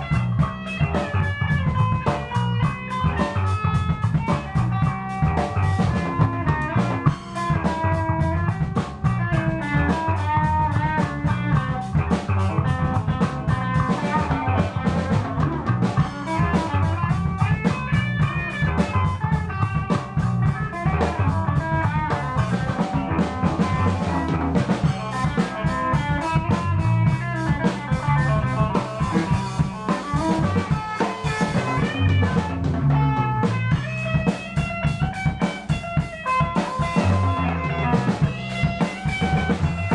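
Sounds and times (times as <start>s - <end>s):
bass: 0.0s - 39.9s
drum kit: 0.0s - 39.9s
electric guitar: 0.0s - 39.9s.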